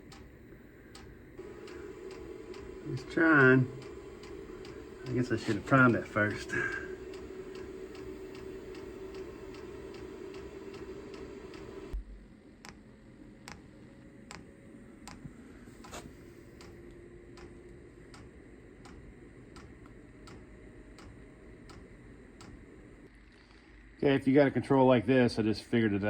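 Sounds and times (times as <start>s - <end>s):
fan hum: 0.0s - 26.0s
fuel pump ticking: 1.4s - 12.0s.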